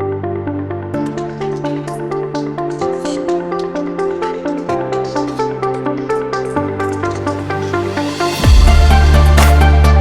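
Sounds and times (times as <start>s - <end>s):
heavy bass line: 7.4s - 10.0s
kick drum: 8.4s - 10.0s.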